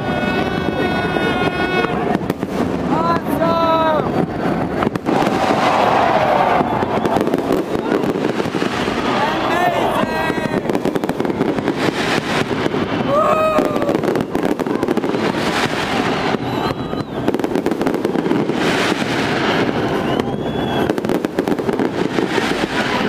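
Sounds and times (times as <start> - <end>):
crowd voices: 0.0 - 23.0
fireworks bangs and crackling: 0.0 - 23.0
short cries or whistles: 13.0 - 17.3, 19.3 - 21.1.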